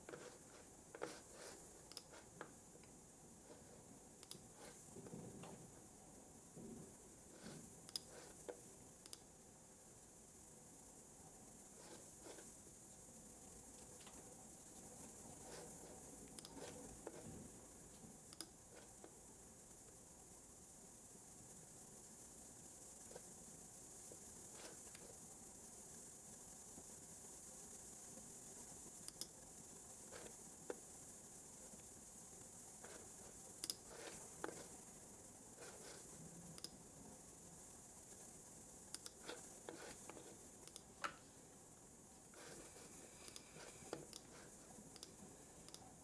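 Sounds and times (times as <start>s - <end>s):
computer mouse clicks: 0.0s - 2.6s, 4.2s - 4.8s, 7.8s - 9.3s, 16.3s - 17.2s, 18.3s - 19.2s, 29.0s - 29.4s, 33.0s - 34.7s, 35.7s - 36.8s, 38.9s - 41.2s, 43.2s - 45.9s
faint hiss: 0.0s - 46.0s.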